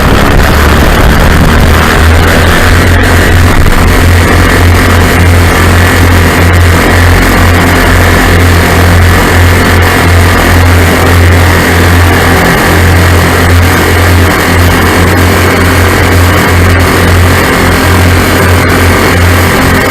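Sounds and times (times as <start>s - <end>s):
aircraft engines droning: 0.0s - 19.9s.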